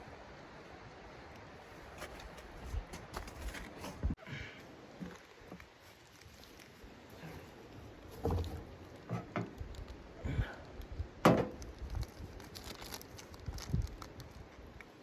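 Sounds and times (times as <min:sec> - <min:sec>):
rustling: 0:01.6 - 0:04.2, 0:05.0 - 0:10.0, 0:11.6 - 0:14.6.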